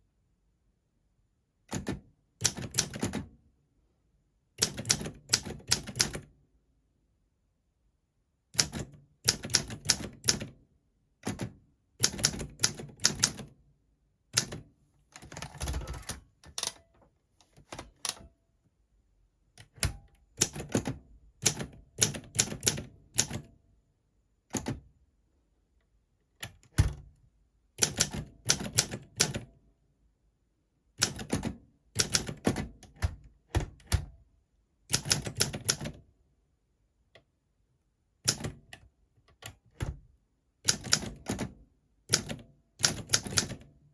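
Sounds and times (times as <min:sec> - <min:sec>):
typewriter keystrokes: 0:01.7 - 0:03.2, 0:04.6 - 0:06.2, 0:08.6 - 0:10.6, 0:11.2 - 0:13.5, 0:15.2 - 0:16.8, 0:19.6 - 0:23.5, 0:27.8 - 0:29.5, 0:31.0 - 0:34.1, 0:34.9 - 0:36.0, 0:38.3 - 0:38.7, 0:40.7 - 0:43.7.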